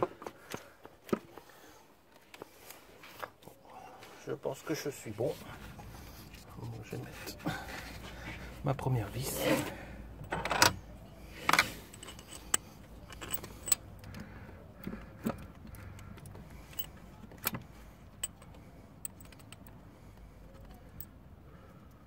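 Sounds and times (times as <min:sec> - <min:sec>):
metal clinks of bolt and tools: 0:11.4 - 0:14.2, 0:16.2 - 0:19.8.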